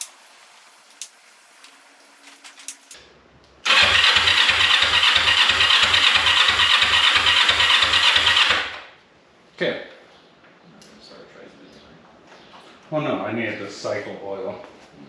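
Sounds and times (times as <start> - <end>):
engine cranking without starting: 3.7 - 8.9.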